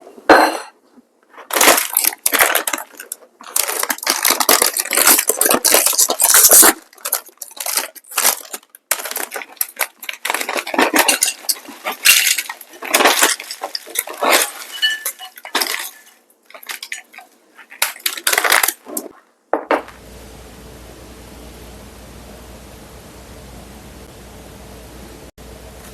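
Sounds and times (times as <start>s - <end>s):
crunching: 1.2s - 20.1s
dishes and cutlery clattering: 8.9s - 19.1s
steady hiss: 19.8s - 25.9s.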